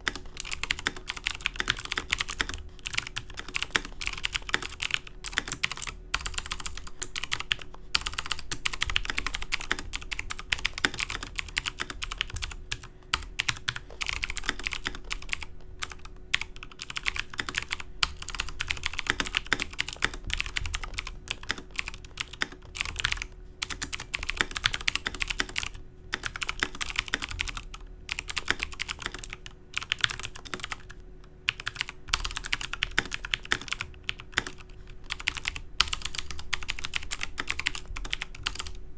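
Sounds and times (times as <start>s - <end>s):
clicky keyboard typing: 0.0s - 38.8s.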